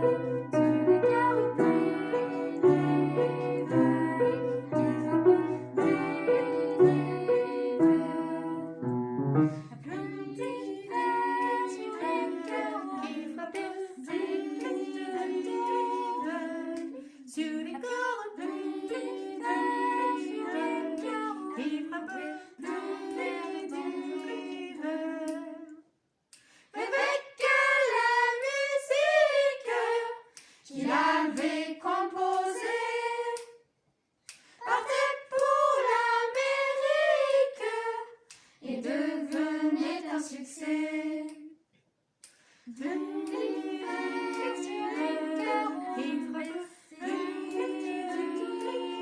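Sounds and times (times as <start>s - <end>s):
children's choir singing: 0.0s - 25.8s, 26.7s - 33.6s, 34.6s - 41.5s, 42.7s - 49.0s.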